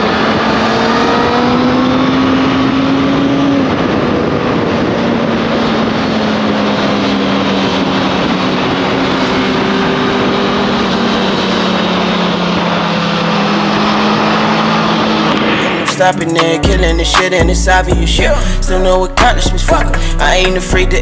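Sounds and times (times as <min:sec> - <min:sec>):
wind noise: 0:00.0 - 0:16.1.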